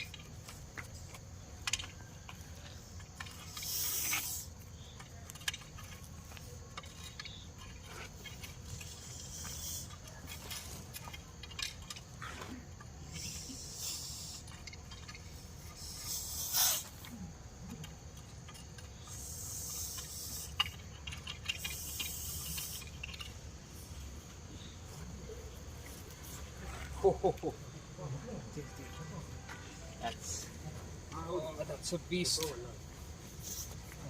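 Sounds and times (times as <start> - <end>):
snake hissing: 3.2 - 4.9, 8.6 - 10.2, 13.0 - 17.4, 18.9 - 24.0, 33.3 - 34.0.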